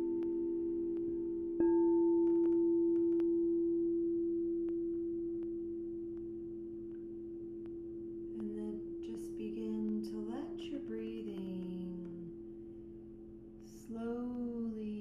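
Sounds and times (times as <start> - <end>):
singing bowl ringing: 0.0 - 9.2.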